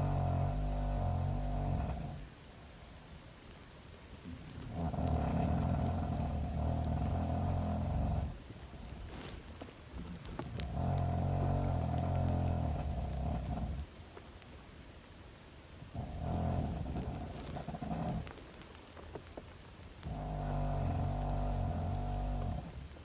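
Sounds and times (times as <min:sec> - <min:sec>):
girl snoring: 0:00.0 - 0:02.2, 0:04.7 - 0:08.4, 0:10.7 - 0:13.9, 0:16.0 - 0:18.3, 0:20.1 - 0:22.9.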